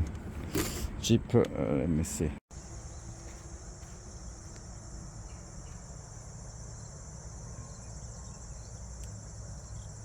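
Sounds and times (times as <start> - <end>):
crickets chirping: 2.5 - 10.0.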